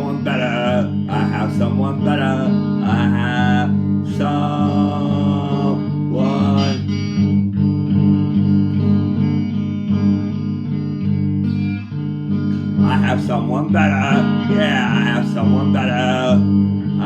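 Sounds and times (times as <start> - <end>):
guitar playing chords: 0.0 - 17.0
sliding guitar melody: 0.0 - 17.0.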